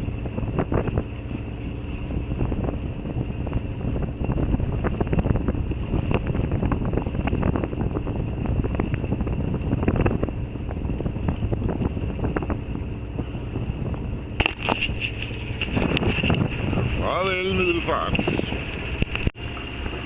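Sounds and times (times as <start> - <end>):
low rumble of sailboat: 0.0 - 20.0
wind buffeting microphone: 0.0 - 20.0
clicks and crackles: 14.4 - 16.4.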